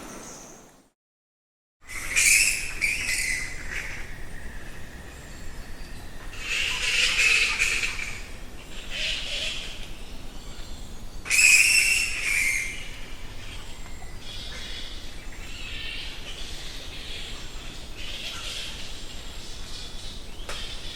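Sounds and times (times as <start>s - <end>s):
flying foxes screeching: 1.9s - 5.4s, 6.3s - 9.8s, 11.3s - 13.6s.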